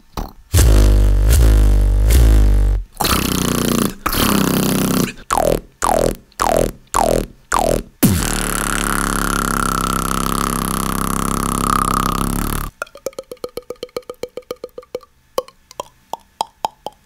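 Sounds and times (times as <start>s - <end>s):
beatboxer pitch-dropping sounds: 0.0s - 17.0s
beatboxer long buzzing sound: 0.5s - 12.8s.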